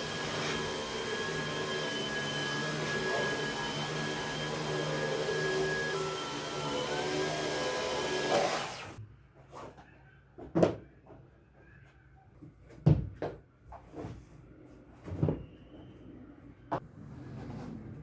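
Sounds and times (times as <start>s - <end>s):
vacuum cleaner: 0.0s - 9.0s.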